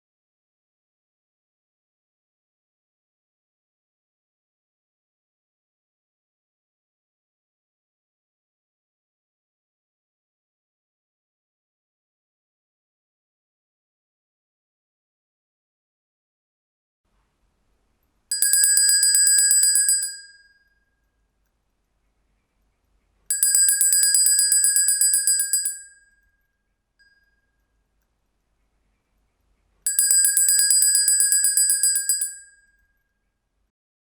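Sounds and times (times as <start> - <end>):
handbell ringing: 18.3 - 20.6, 23.3 - 26.0, 29.9 - 32.8.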